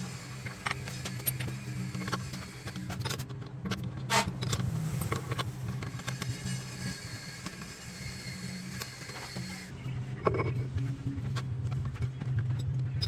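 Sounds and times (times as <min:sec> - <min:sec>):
electric motor humming: 0:00.0 - 0:03.0, 0:04.6 - 0:09.7.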